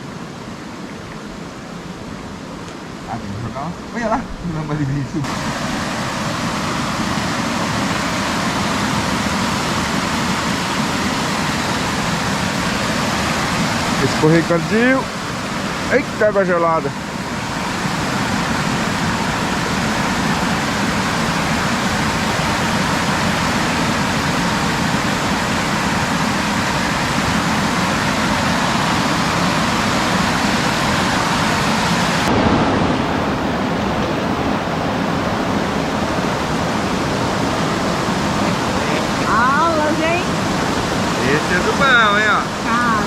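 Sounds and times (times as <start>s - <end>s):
waterfall rushing: 0.0s - 43.0s.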